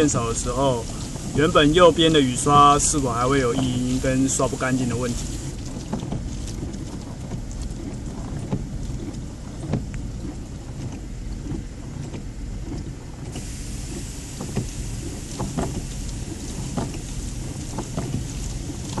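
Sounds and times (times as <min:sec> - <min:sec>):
steady low hum: 0:00.0 - 0:19.0
windshield wipers sweeping: 0:00.0 - 0:19.0.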